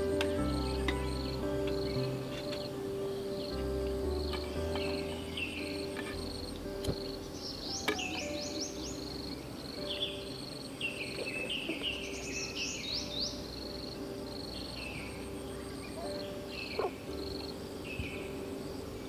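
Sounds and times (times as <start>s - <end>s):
crickets chirping: 0.0s - 19.0s
faint low drone: 0.0s - 19.0s
birds whistling calls: 6.8s - 13.8s.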